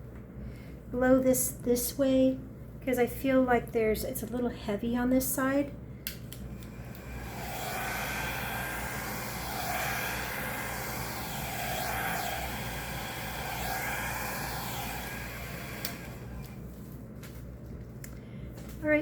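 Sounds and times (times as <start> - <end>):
hair dryer blowing: 6.6 - 16.7.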